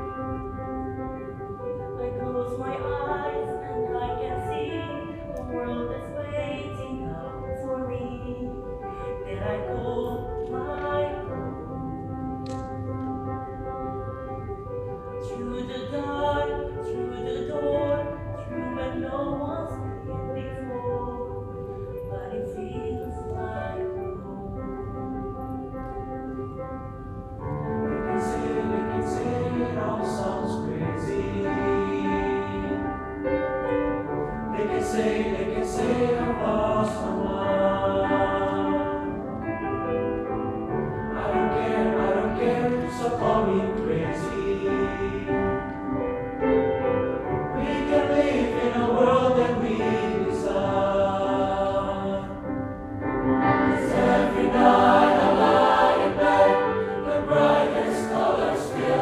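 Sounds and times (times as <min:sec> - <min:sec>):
choir singing in parts: 0:02.0 - 0:12.7, 0:27.7 - 0:59.0.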